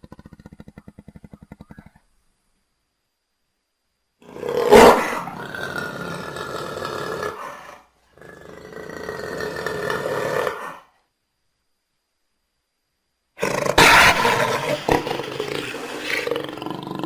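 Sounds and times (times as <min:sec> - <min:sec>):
jaguar calling: 0:00.0 - 0:02.2, 0:13.4 - 0:16.4.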